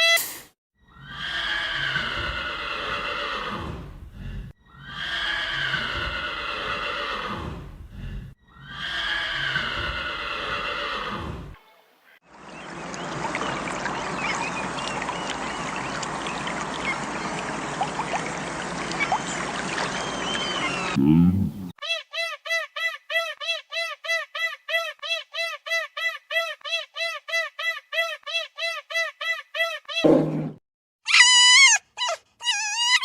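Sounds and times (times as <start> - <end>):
horse whinnying: 1.0 - 3.8, 4.8 - 7.6, 8.6 - 11.6
faint high chirps: 12.6 - 21.0.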